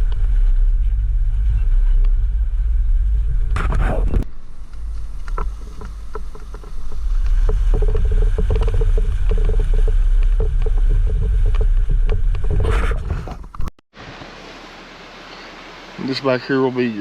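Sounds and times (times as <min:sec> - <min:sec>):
engine and drivetrain rumble: 0:00.0 - 0:13.7
steady hum: 0:00.0 - 0:17.0
knocks and rattles: 0:05.2 - 0:13.7.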